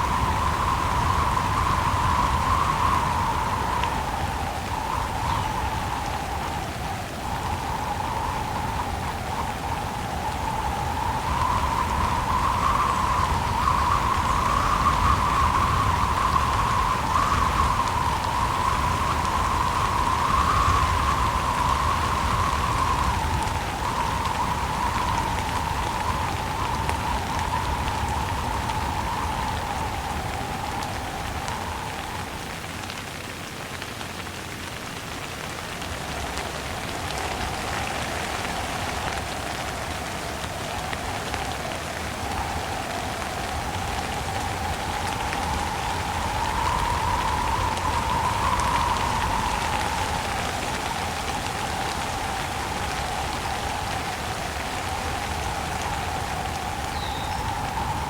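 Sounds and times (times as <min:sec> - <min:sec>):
wind whistling: 0:00.0 - 0:33.1, 0:35.5 - 0:58.0
heavy rain: 0:00.0 - 0:58.0.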